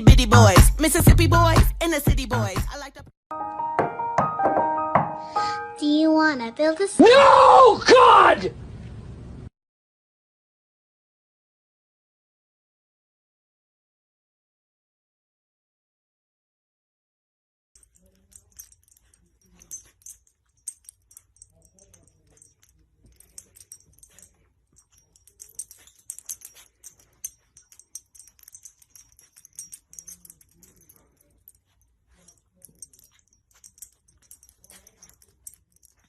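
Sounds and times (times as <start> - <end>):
collar tags jangling: 17.8 - 36.0.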